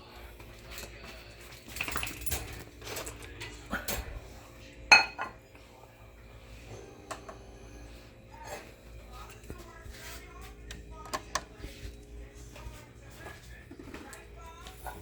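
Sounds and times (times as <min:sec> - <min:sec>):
dog food dishes clinking: 0:01.6 - 0:05.5, 0:06.7 - 0:07.6, 0:13.2 - 0:15.0.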